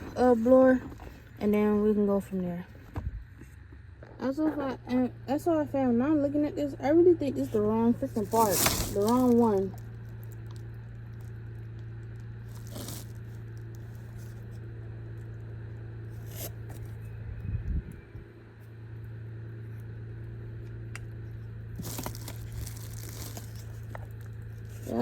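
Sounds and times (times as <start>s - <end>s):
steady low hum: 0.0s - 25.0s
plastic parts scraping and rustling: 7.5s - 11.3s, 12.4s - 14.6s, 21.7s - 25.0s.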